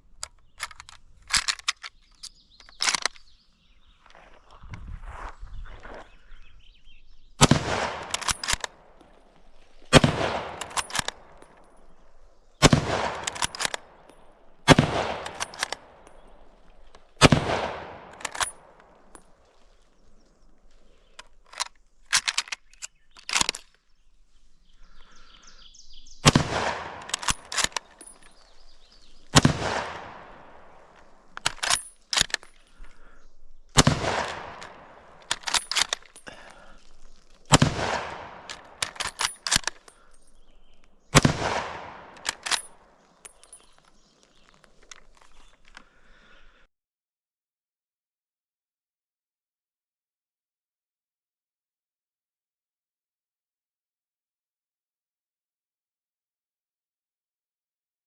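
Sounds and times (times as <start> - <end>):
rifle bolt clicking: 0.2 - 3.3, 7.4 - 19.8, 20.7 - 23.7, 26.2 - 33.0, 33.8 - 45.9
rifle shots: 7.4 - 19.5, 26.2 - 32.6, 33.7 - 39.9, 41.1 - 42.9.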